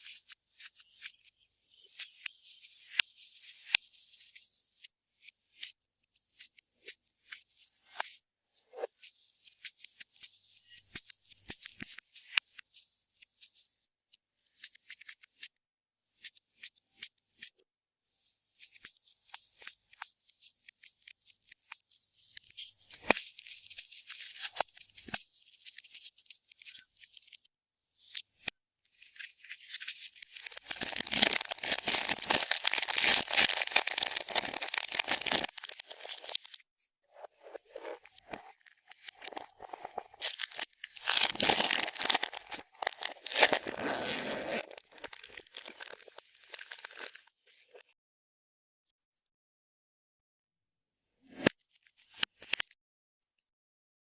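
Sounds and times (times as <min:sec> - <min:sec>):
slime squishing and crackling: 0:30.2 - 0:36.6, 0:38.9 - 0:47.2.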